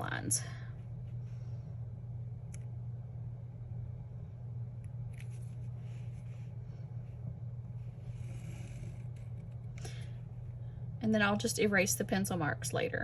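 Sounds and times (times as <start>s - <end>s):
steady low hum: 0.0s - 13.0s
pen scratching on paper: 7.9s - 9.5s.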